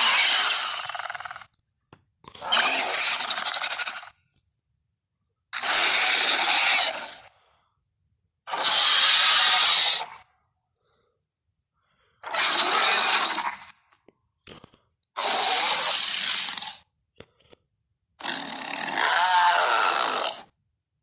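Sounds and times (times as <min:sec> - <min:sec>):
harsh raspy creature hisses: 0:00.0 - 0:01.4, 0:02.4 - 0:04.2, 0:05.6 - 0:07.3, 0:08.5 - 0:10.2, 0:12.2 - 0:13.8, 0:15.2 - 0:16.8, 0:18.2 - 0:20.5.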